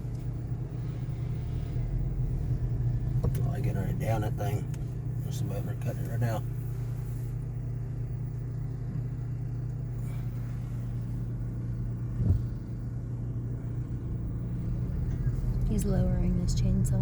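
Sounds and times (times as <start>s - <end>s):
car cabin drone: 0.0s - 17.0s
thump: 12.2s - 12.6s.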